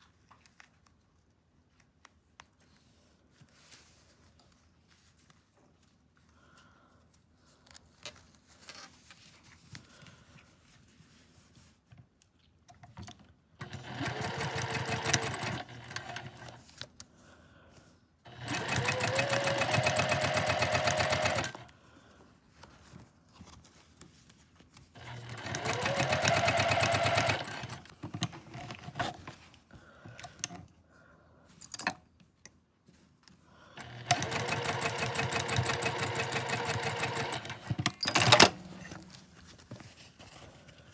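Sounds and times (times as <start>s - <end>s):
sewing machine stitching: 13.6s - 16.6s, 18.3s - 21.7s, 25.0s - 29.2s, 33.8s - 39.2s
fabric handling: 18.4s - 21.6s.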